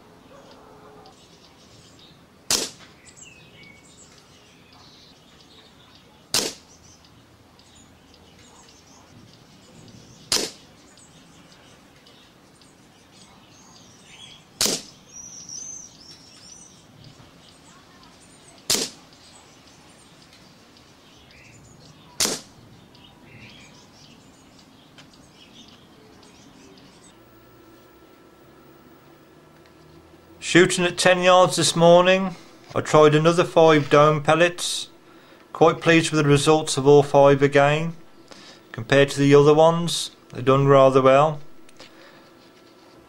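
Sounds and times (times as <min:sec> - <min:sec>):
birds chirping faintly: 0:00.0 - 0:43.0
air rifle shots: 0:02.5 - 0:02.9, 0:06.3 - 0:06.7, 0:10.3 - 0:10.7, 0:14.6 - 0:15.0, 0:18.7 - 0:19.0, 0:22.2 - 0:22.6.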